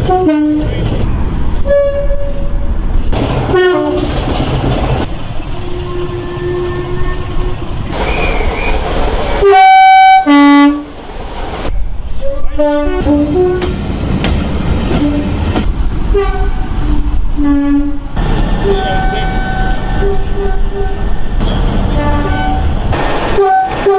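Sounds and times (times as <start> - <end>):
two-tone train horns: 0.0 - 4.2, 5.6 - 7.8, 9.4 - 10.9, 12.2 - 13.8, 14.9 - 15.4, 16.1 - 21.2, 21.9 - 23.9
rumble and clatter of trains: 0.0 - 23.9.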